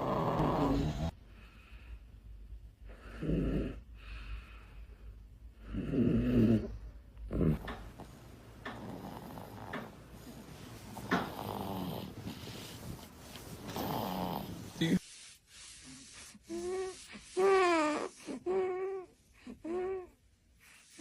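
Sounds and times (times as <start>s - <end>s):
baby snoring: 0.0s - 1.2s, 5.6s - 12.8s, 13.7s - 15.0s, 16.4s - 20.2s.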